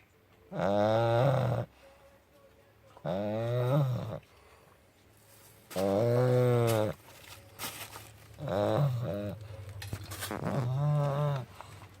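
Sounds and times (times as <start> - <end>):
puppy snoring loudly: 0.5 - 1.7, 3.0 - 4.2, 8.4 - 9.5, 10.3 - 11.6.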